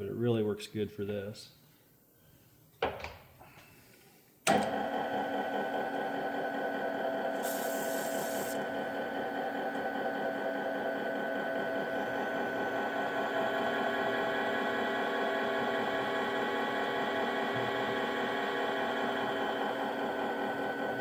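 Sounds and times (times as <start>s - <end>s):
brief hiss: 7.4s - 8.6s.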